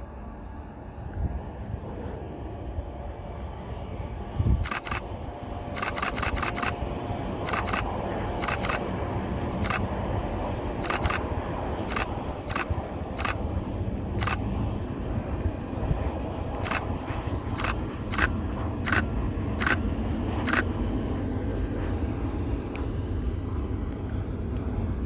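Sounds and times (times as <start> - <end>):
steady low rumble: 0.0 - 25.0
sharp clicks: 4.6 - 5.0, 5.8 - 6.8, 7.4 - 8.8, 9.6 - 9.9, 10.8 - 11.2, 11.9 - 13.4, 14.2 - 14.4, 16.6 - 16.9, 17.5 - 19.8, 20.4 - 20.6.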